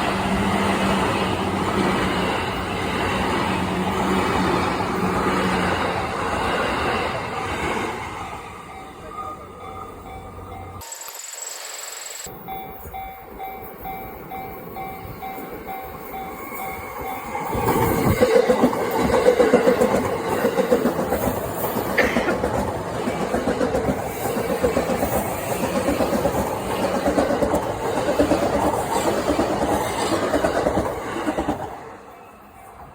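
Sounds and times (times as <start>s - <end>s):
train wheel squeal: 6.6s - 22.5s
level crossing warning bell: 8.5s - 11.0s, 12.2s - 18.2s
train wheels clattering over rails: 17.5s - 31.8s.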